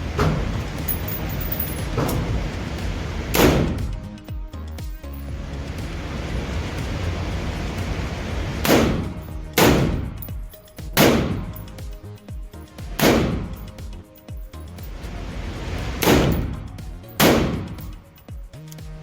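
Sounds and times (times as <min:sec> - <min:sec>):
gunshots with ringing echo: 0:03.4 - 0:03.9, 0:08.6 - 0:10.3, 0:10.9 - 0:11.7, 0:13.0 - 0:13.6, 0:16.0 - 0:16.6, 0:17.2 - 0:18.0.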